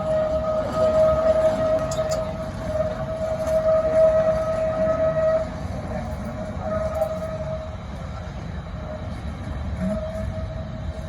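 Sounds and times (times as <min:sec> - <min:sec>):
locomotive whistle blasts: 0:00.0 - 0:11.0
train rumbling on track: 0:00.0 - 0:11.0.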